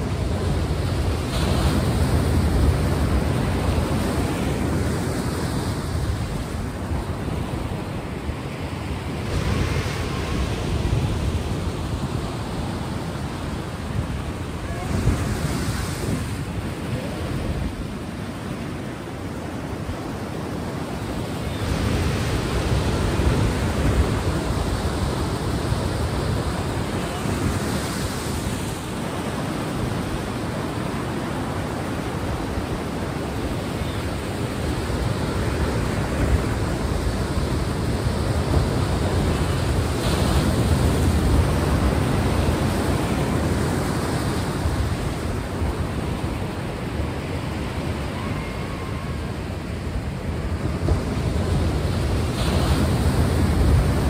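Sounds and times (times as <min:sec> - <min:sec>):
ocean waves breaking: 0:00.0 - 0:54.0.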